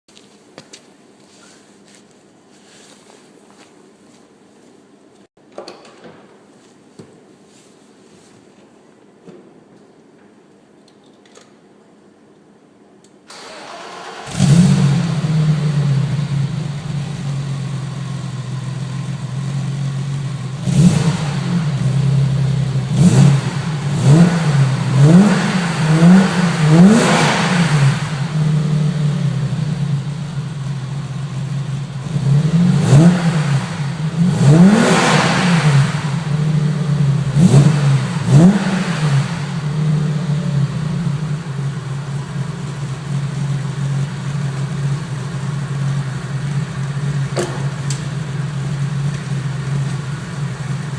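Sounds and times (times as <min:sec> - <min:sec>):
car engine starting: 0:13.3 - 0:50.9
car engine idling and revving: 0:13.4 - 0:50.9.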